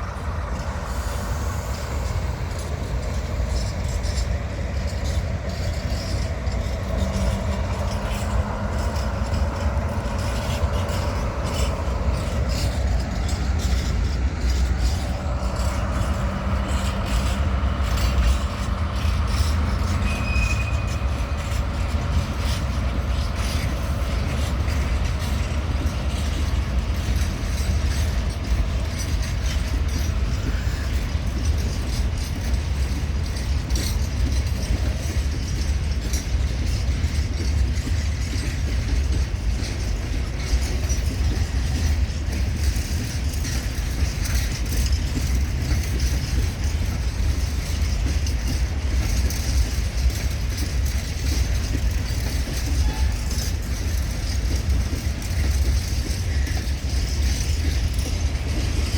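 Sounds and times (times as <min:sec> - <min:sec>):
freight train rumbling: 0:00.0 - 0:58.9
train wheel clicks: 0:00.0 - 0:58.9
faint squeal: 0:19.9 - 0:21.2.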